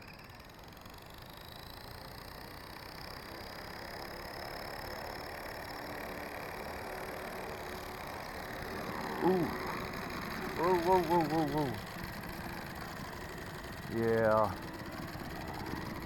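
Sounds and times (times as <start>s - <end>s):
electric helicopter motor whine: 0.0s - 16.0s.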